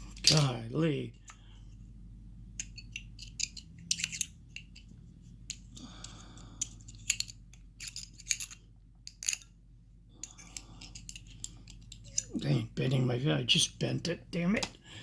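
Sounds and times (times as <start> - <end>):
metal tool clicking on padlock: 2.6 - 4.8.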